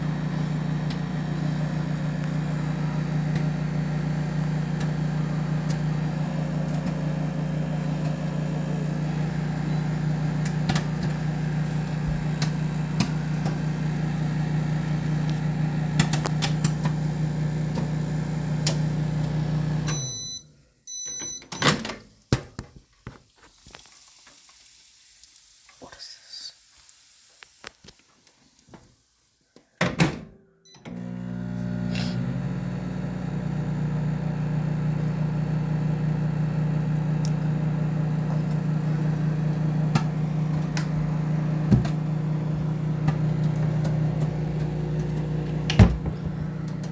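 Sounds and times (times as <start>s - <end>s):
microwave oven humming: 0.0s - 21.3s, 30.7s - 46.9s
microwave beeps: 0.1s - 21.8s, 30.7s - 46.9s
popcorn popping: 15.2s - 17.1s.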